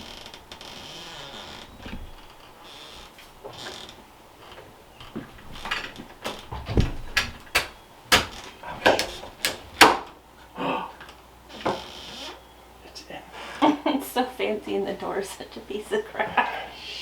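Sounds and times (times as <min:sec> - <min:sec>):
metallic clicks of door-lock hardware: 0:05.6 - 0:10.0.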